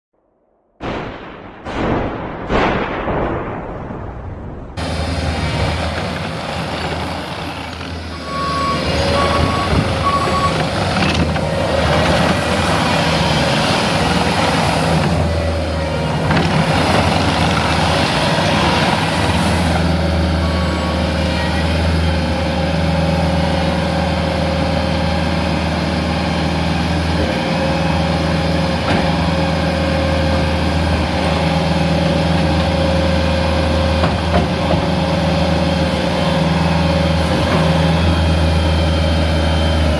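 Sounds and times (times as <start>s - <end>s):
diesel engine running: 4.8s - 39.9s
backup alarm beeps: 8.2s - 10.6s.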